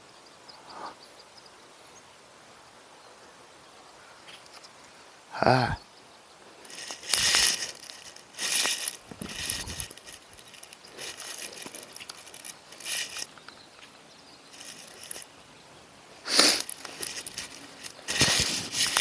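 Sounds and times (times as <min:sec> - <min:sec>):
fishing tackle rustling and clicking: 0:04.3 - 0:04.7, 0:06.6 - 0:13.9, 0:14.5 - 0:15.3, 0:16.3 - 0:19.0.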